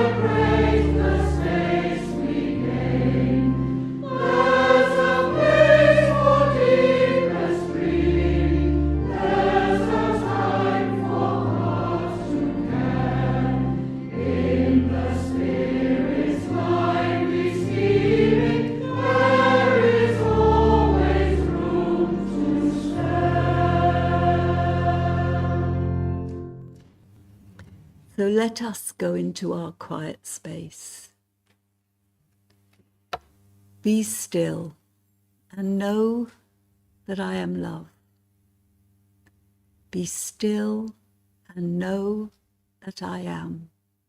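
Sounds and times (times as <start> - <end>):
congregation singing a hymn: 0.0 - 26.6.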